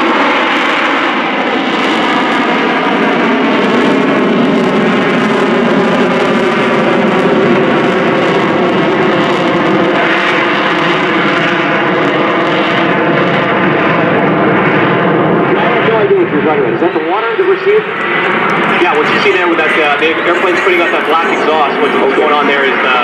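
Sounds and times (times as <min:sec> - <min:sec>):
jet engine roaring with whine: 0:00.0 - 0:23.0.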